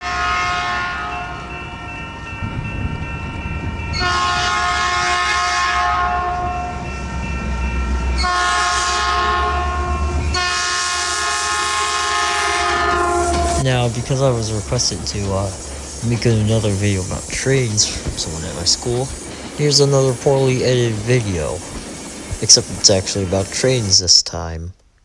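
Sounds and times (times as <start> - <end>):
train air horn blasts: 0.0 - 1.4, 4.0 - 6.8, 8.2 - 13.9
train low rumble: 0.0 - 25.0.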